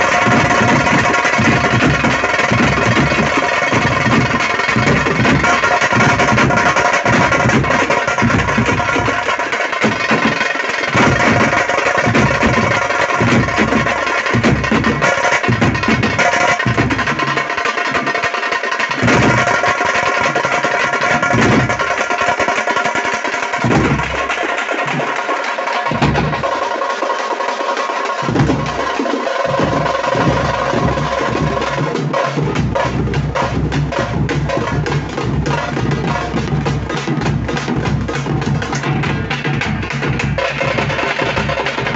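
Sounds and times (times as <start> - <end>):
frame drums played fast: 0.0 - 41.9.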